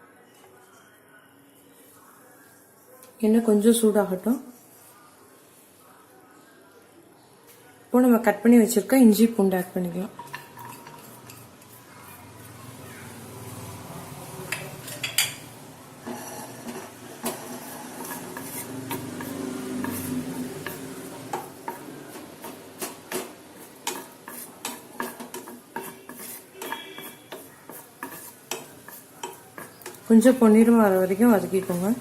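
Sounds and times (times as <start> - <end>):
spoon scraping a pan: 10.0 - 12.6, 14.5 - 32.0
oil sizzling: 10.2 - 32.0.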